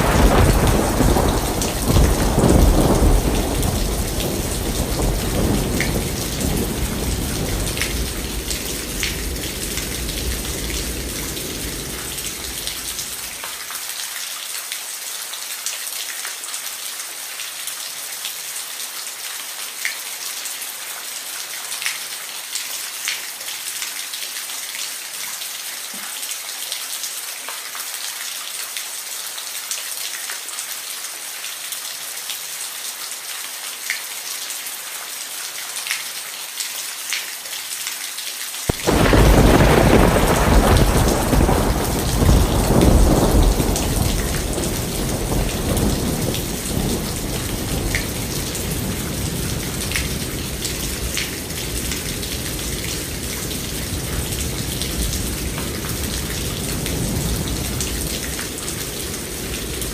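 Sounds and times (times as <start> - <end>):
thunderclap: 0.0 - 13.4, 38.7 - 58.7
steady rain: 0.0 - 59.9.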